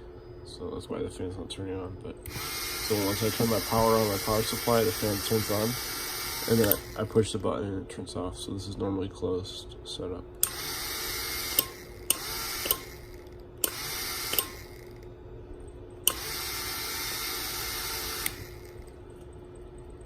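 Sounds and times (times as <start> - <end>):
small fan motor running: 2.2 - 7.7, 10.4 - 15.3, 16.0 - 19.4.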